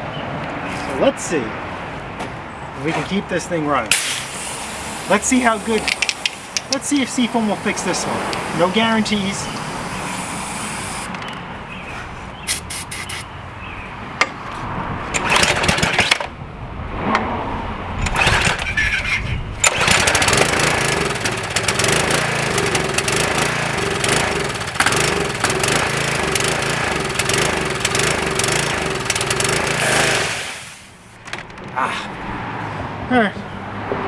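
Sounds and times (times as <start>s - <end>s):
small engine cranking and running: 3.9s - 11.4s, 15.2s - 16.3s, 18.0s - 31.0s.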